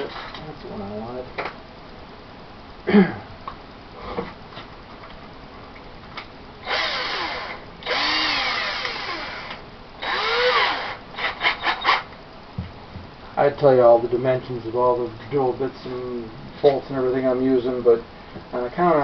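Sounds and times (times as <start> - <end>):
power drill motor: 6.6 - 12.0.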